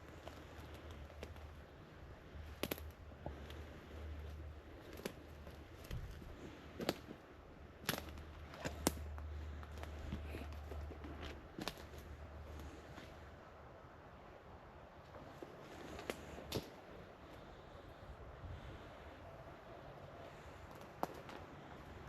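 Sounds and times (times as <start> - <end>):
dry twigs snapping: 0.0 - 13.2, 15.0 - 17.4, 20.4 - 21.6.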